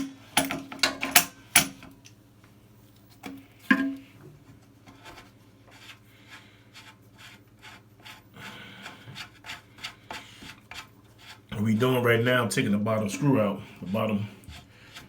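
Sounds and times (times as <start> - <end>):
hand tools clicking and scraping: 0.0 - 1.9.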